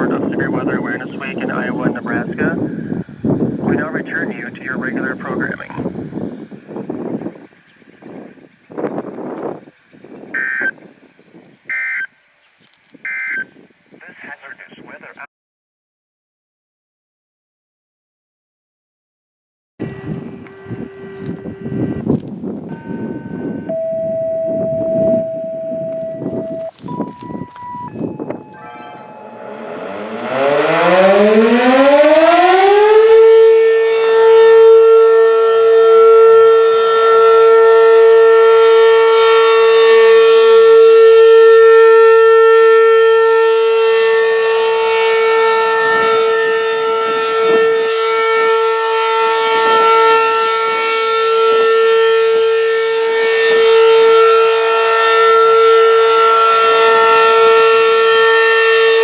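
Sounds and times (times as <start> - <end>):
warning siren winding up: 10.4 - 10.8, 13.1 - 13.5, 19.8 - 59.0.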